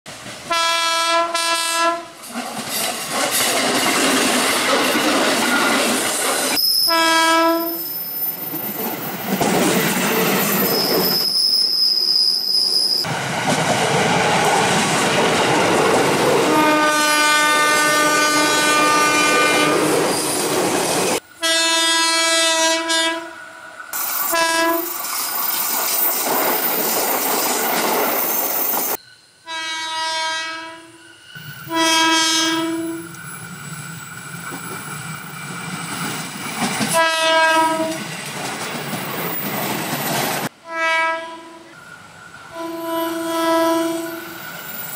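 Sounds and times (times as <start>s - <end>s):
trains running on rails: 0.1s - 44.9s
electric train horn blasts: 0.5s - 2.2s, 6.8s - 7.8s, 16.5s - 20.0s, 21.4s - 23.4s, 24.3s - 24.9s, 29.4s - 33.2s, 36.9s - 38.0s, 40.6s - 41.8s, 42.5s - 44.4s
high steady squeal: 6.4s - 7.0s, 10.2s - 13.1s, 23.8s - 30.0s, 30.6s - 31.8s.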